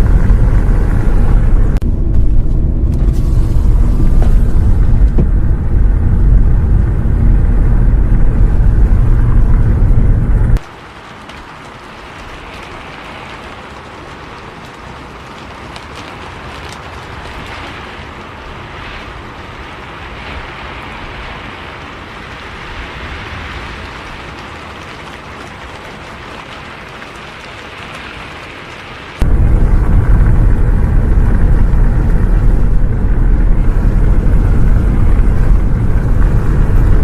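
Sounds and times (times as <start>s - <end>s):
faint low rumble: 0.0s - 10.6s, 29.2s - 37.0s
loud low vehicle rumble: 0.0s - 10.6s, 29.2s - 37.0s
steady rain: 0.0s - 37.0s.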